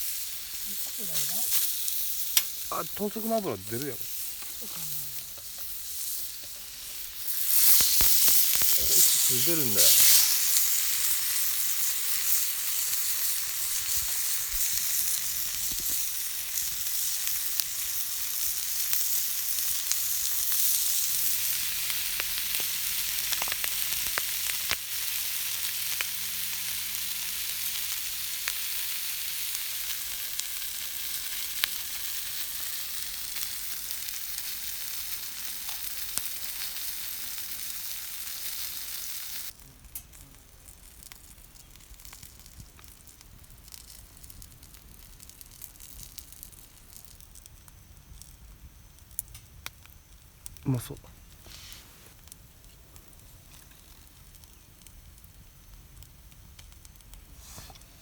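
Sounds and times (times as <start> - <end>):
meat sizzling in a skillet: 0.0 - 58.0.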